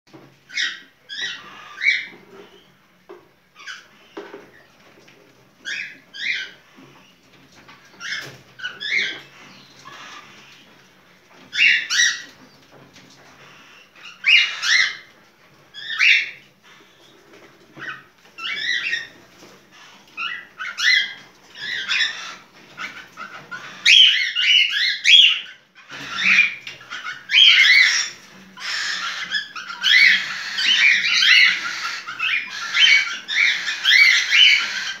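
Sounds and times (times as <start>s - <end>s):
cockatiel chirpy calling: 20.2s - 35.0s.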